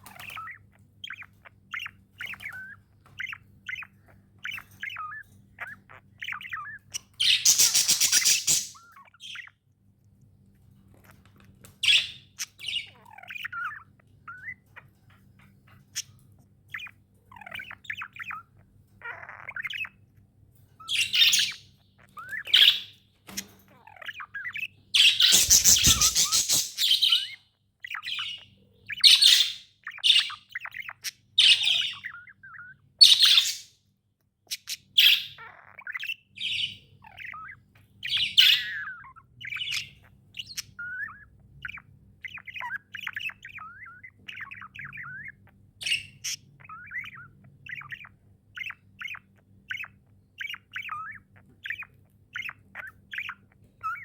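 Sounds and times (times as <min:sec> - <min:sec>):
budgies chirping and warbling: 0:00.0 - 0:54.0.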